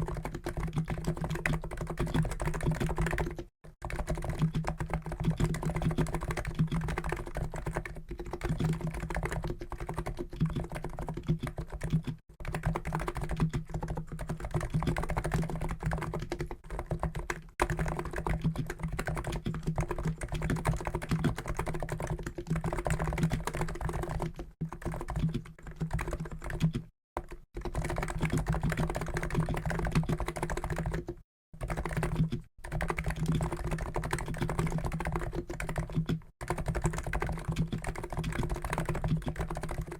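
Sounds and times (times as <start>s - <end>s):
fast keyboard typing: 0.0s - 39.9s.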